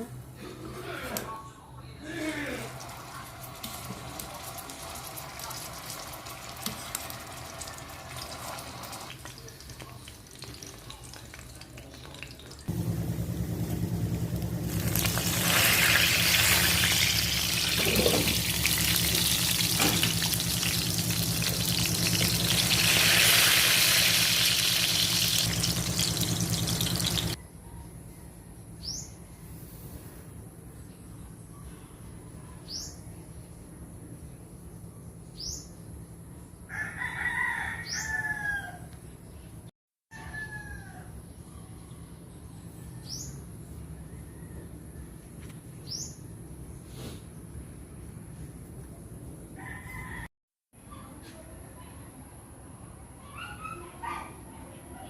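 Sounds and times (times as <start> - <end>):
food sizzling in hot oil: 2.7 - 12.7, 14.6 - 27.4
low hum: 12.7 - 27.4.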